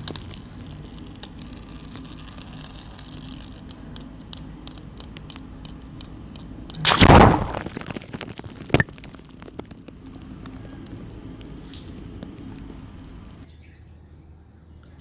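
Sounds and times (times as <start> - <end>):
balloon bursting: 6.8 - 9.3.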